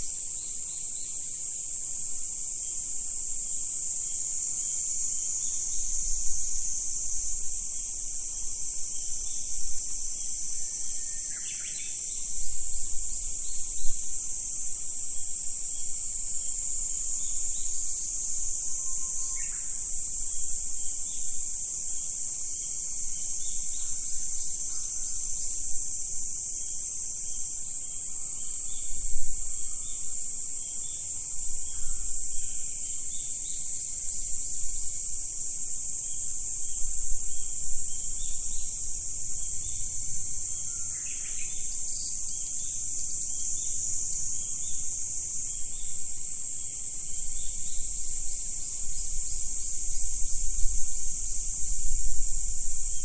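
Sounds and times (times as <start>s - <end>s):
insects chorus: 0.0s - 53.0s.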